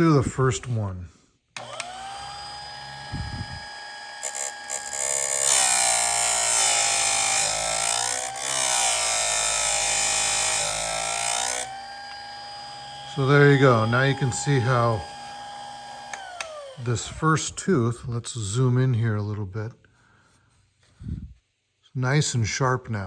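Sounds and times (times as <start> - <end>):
motor whining: 1.6 - 17.2.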